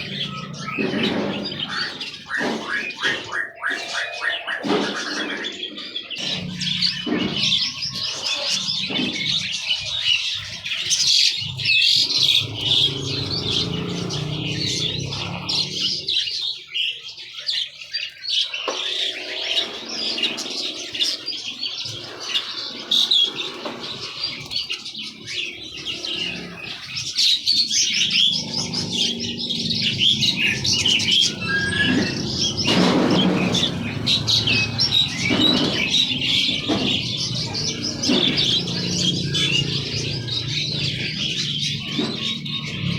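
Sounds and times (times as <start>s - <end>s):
songbirds chirping: 0.0s - 42.9s.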